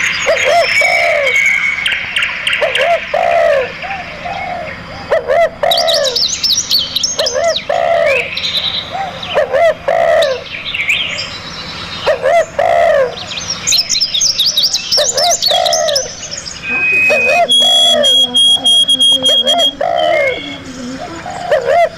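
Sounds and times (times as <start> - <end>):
high bird chirps and trills: 0.0 - 21.7
birds calling: 0.0 - 21.9.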